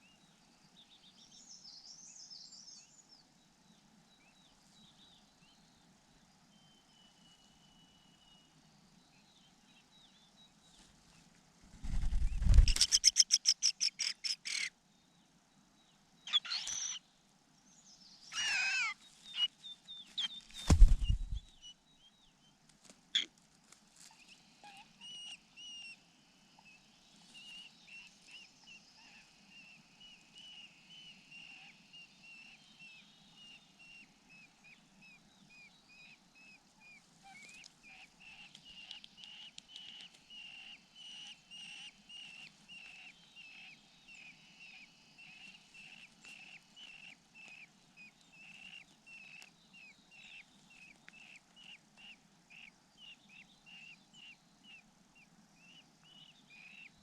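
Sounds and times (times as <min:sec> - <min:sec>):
birds chirping rapidly: 0:20.2 - 0:21.6.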